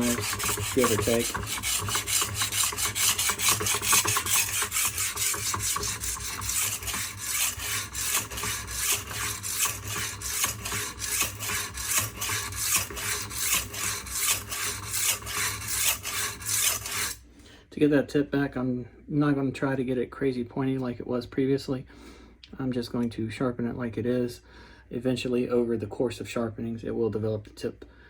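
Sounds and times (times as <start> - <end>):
knife rasping on sharpening stone: 0.0 - 17.2.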